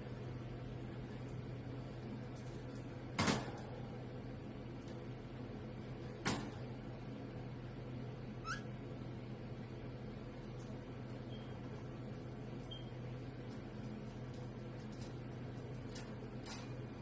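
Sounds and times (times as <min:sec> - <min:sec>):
low electrical hum: 0:00.0 - 0:17.0
parrot squawking: 0:08.4 - 0:08.7.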